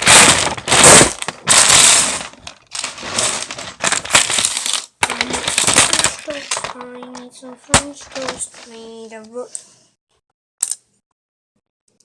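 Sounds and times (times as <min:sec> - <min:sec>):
plastic bricks clattering: 0:00.0 - 0:08.9.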